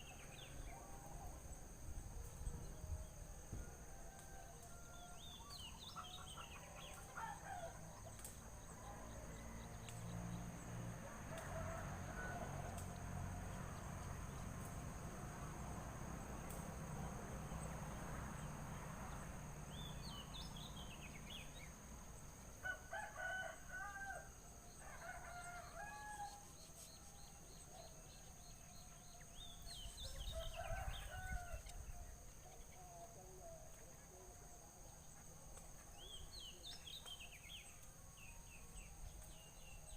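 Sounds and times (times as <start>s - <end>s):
rooster crowing: 11.0s - 13.5s, 22.6s - 26.4s, 30.0s - 32.2s.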